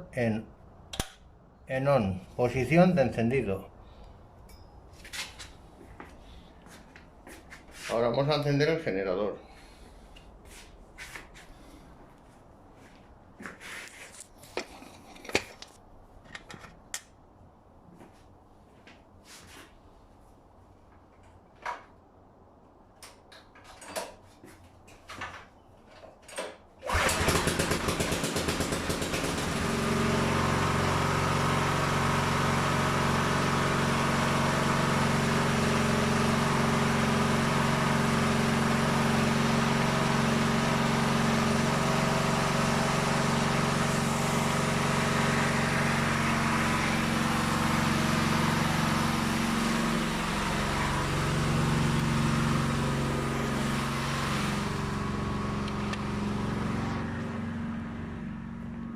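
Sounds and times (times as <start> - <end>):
generator engine running: 26.8 - 58.9.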